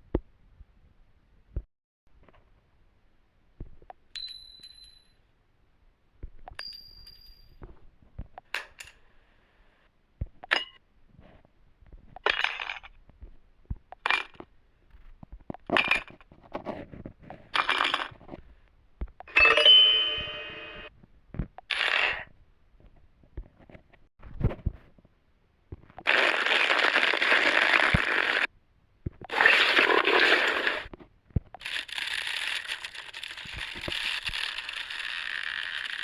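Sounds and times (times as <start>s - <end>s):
small metal objects clinking: 4.2s - 5.3s, 31.6s - 36.0s
short high metallic rings: 19.3s - 20.9s.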